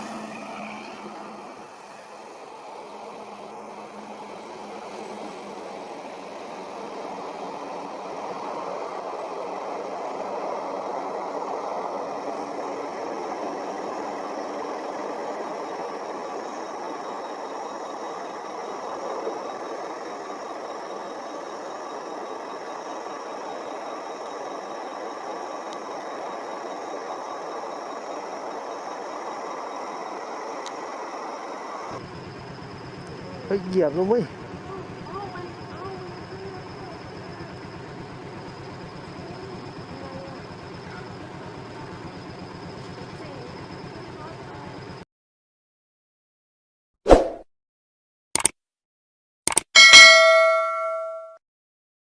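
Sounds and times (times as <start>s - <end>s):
faint high whine: 0.5s - 45.0s
vehicle engine running: 32.0s - 45.0s.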